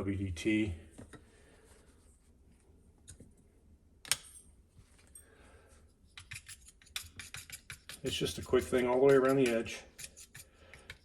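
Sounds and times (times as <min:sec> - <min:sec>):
needles stirring ground coffee: 0:06.1 - 0:11.0.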